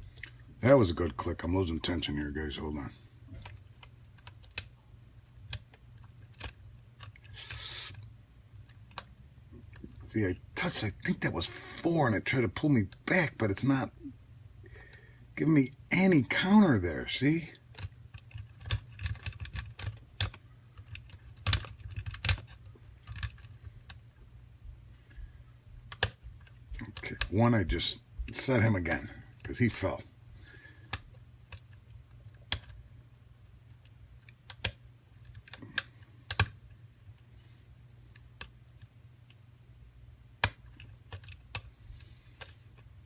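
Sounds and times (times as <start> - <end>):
steady low hum: 0.0 - 43.0
lock pick ticks and clicks: 33.7 - 36.6.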